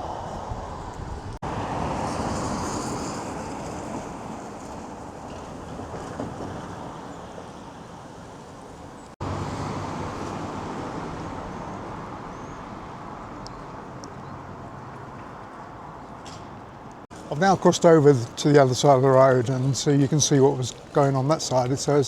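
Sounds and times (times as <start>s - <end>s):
wind on microphone: 0.0s - 7.6s
street traffic engine drone: 0.0s - 22.0s.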